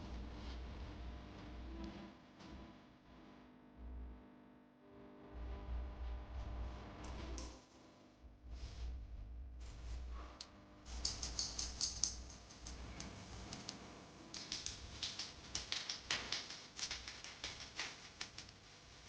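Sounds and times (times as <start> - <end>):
irregular light clicks and ticks: 10.4 - 18.6.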